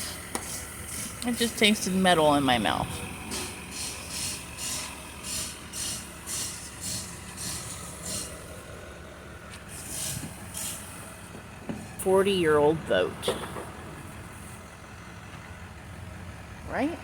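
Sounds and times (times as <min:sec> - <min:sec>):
rhythmic abrasive strokes: 0:00.0 - 0:08.6.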